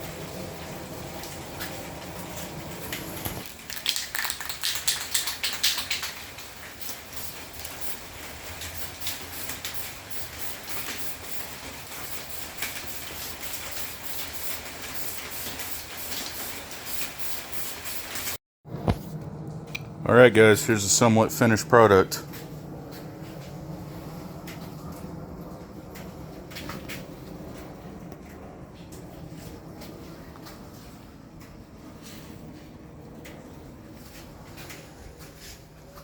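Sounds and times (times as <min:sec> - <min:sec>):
spray paint can hissing: 0:03.4 - 0:18.4
steady low hum: 0:06.3 - 0:36.0.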